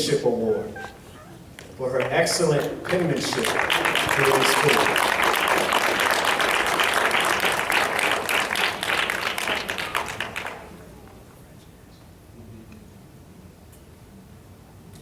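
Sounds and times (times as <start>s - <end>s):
audience clapping: 1.5s - 11.2s.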